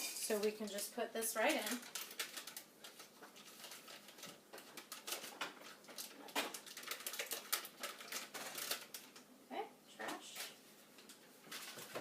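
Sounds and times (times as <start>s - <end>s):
paper wrapper crinkling: 1.4s - 9.2s, 10.3s - 12.0s.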